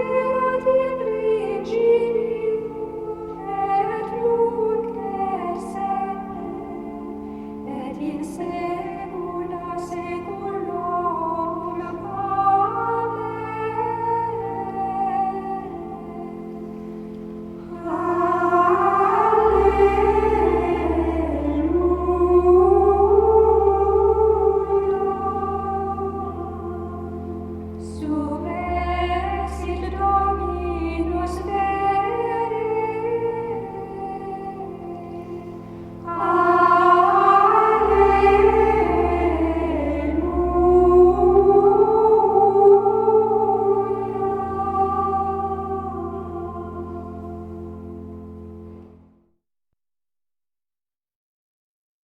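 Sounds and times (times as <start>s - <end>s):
low sustained note: 0.0s - 49.0s
women's choir chanting: 17.7s - 27.2s, 27.8s - 35.5s, 36.1s - 47.6s.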